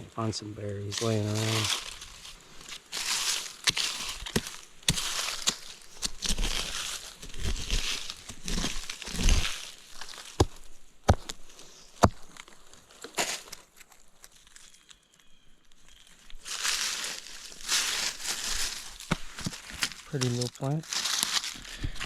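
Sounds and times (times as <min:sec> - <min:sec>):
dry leaves rustling and crunching: 0:00.8 - 0:22.0
twigs cracking: 0:00.8 - 0:22.0
dull thumps: 0:10.3 - 0:11.4.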